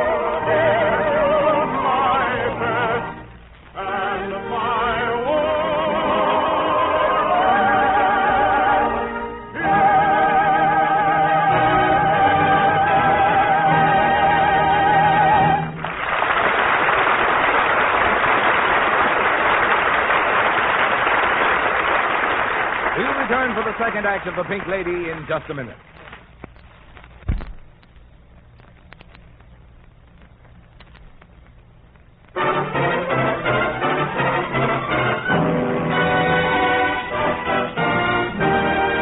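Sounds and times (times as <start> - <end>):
operatic singing with orchestra: 0.0 - 15.8
audience applause: 15.6 - 25.7.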